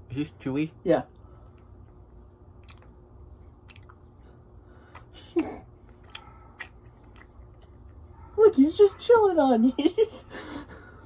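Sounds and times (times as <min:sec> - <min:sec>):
person chewing: 0:01.5 - 0:08.0
wet mouth clicks: 0:02.6 - 0:04.0, 0:04.9 - 0:05.2, 0:05.9 - 0:07.9.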